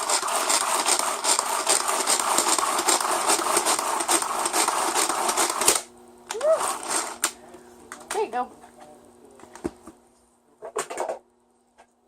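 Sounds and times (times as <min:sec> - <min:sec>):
pull-cord chopper grinding nuts: 0:00.0 - 0:07.4.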